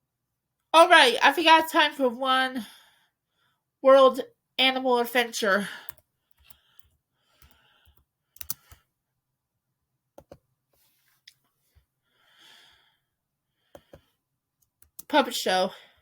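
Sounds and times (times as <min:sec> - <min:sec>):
soft rustles: 0:10.7 - 0:11.8.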